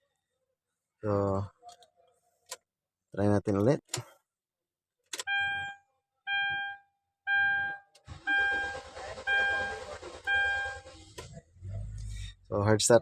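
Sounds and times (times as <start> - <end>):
dashboard warning chime: 5.2 - 10.8
starter cranking engine: 8.1 - 12.1.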